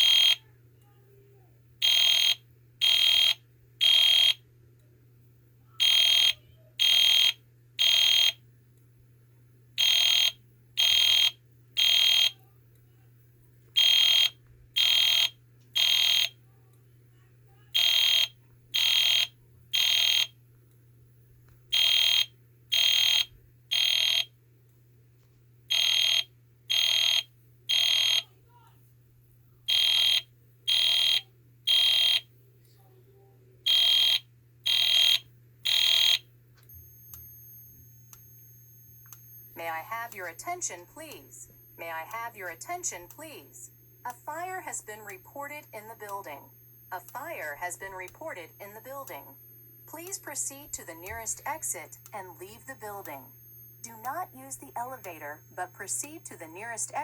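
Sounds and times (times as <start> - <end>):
fire alarm horn blasts: 0.0 - 0.5, 1.8 - 4.4, 5.8 - 8.4, 9.8 - 12.4, 13.8 - 16.4, 17.8 - 20.4, 21.7 - 24.3, 25.7 - 28.3, 29.7 - 32.3, 33.7 - 57.0.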